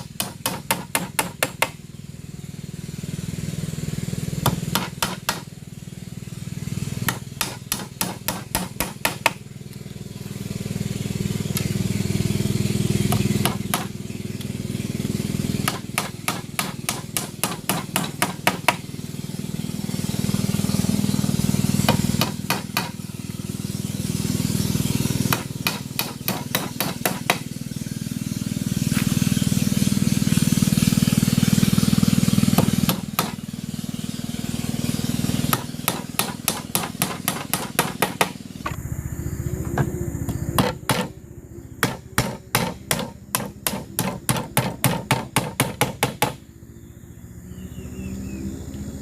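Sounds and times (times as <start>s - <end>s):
hammer striking bamboo: 0.0s - 1.8s, 4.4s - 5.5s, 7.0s - 9.4s, 13.1s - 14.0s, 15.6s - 18.9s, 21.8s - 23.0s, 25.2s - 27.5s, 32.4s - 33.4s, 35.4s - 38.4s, 40.6s - 41.2s, 41.8s - 46.4s
steady low hum: 0.0s - 49.0s.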